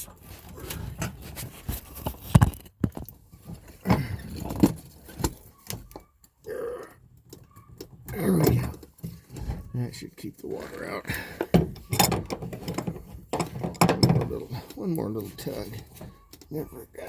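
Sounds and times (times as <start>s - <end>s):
metallic clicks and knocks: 7.1s - 9.7s, 11.4s - 14.8s.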